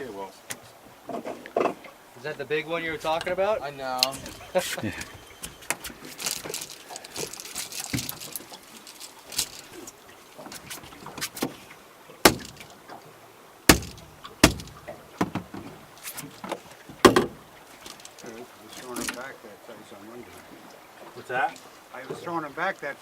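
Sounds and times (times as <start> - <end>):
faint steady hiss: 0.0 - 23.0
gear knocking in a boat: 2.9 - 13.0, 13.7 - 19.2
loud sharp knocks: 12.2 - 12.6, 13.7 - 15.7, 17.0 - 17.4.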